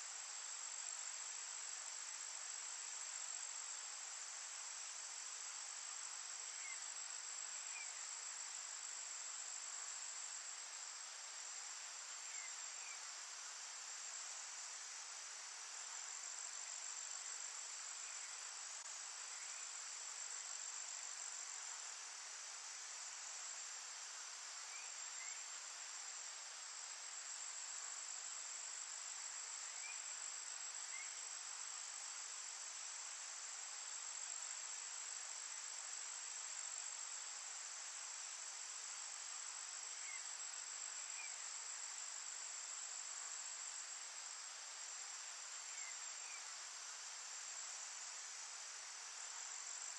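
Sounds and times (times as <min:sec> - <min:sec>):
insects trilling drone: 0:00.1 - 0:49.9.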